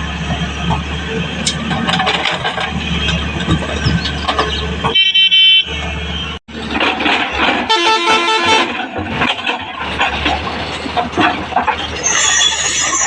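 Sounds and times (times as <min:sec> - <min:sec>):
vehicle horn blast: 0:04.9 - 0:05.8, 0:07.7 - 0:08.7.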